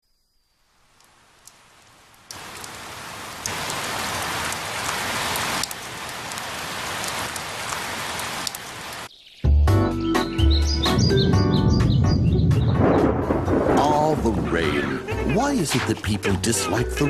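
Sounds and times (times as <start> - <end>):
heavy rain falling: 0.7 - 9.1, 12.6 - 17.0
sharp raindrop ticks: 0.8 - 9.1.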